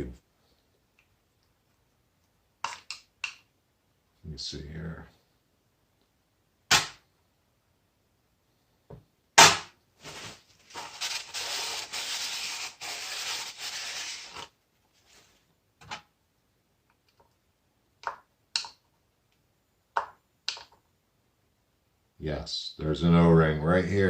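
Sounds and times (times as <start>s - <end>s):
metal tool scraping and rubbing: 10.2s - 14.5s.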